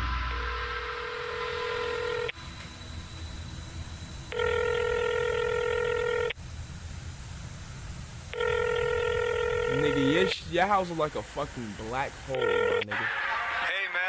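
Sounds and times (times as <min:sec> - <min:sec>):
phone ringing: 0:01.0 - 0:02.4, 0:04.3 - 0:06.4, 0:08.3 - 0:14.0.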